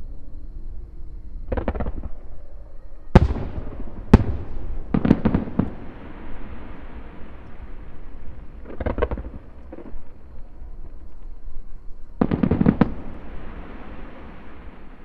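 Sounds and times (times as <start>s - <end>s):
loud firework bangs: 3.2s - 9.9s, 12.2s - 15.0s
fireworks bursting: 3.2s - 11.5s, 12.2s - 15.0s.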